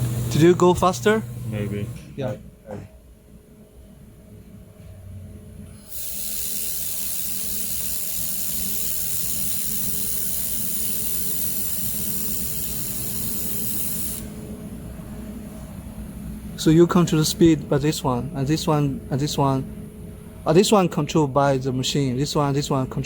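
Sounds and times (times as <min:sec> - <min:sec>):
machine hum: 0:00.0 - 0:23.0
welding hiss: 0:05.7 - 0:14.5.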